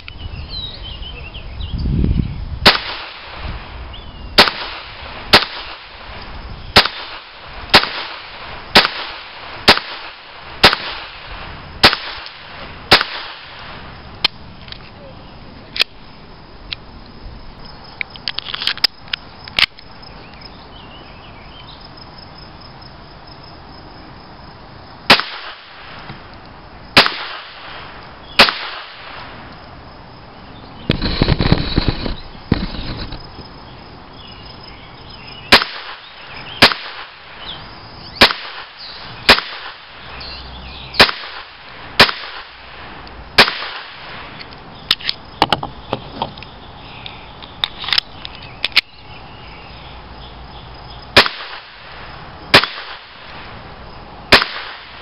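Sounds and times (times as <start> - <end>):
pistol shots: 2.6 - 3.4, 4.4 - 6.0, 6.8 - 13.7, 25.1 - 26.0, 27.0 - 27.8, 28.4 - 29.2, 35.5 - 37.2, 38.2 - 39.9, 41.0 - 42.6, 43.4 - 44.2, 51.2 - 51.8, 52.5 - 53.2, 54.3 - 55.0.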